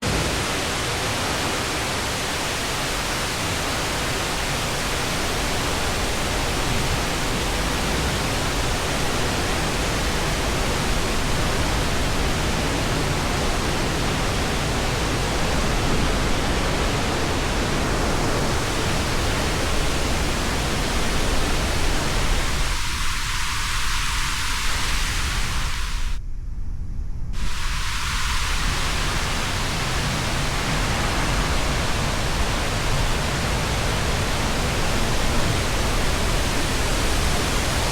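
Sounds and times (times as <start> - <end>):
waterfall pouring: 27.4 - 37.9.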